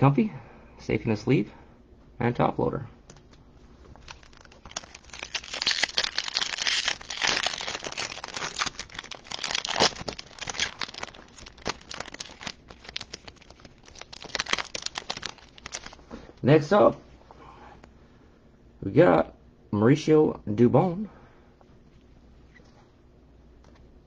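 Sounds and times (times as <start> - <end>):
card pack wrapper crinkling: 3.8 - 16.2.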